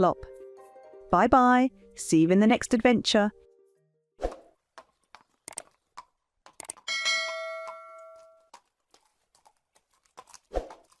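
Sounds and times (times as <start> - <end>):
light clip-clop taps: 4.7 - 11.0
bell-like ding: 6.9 - 8.4.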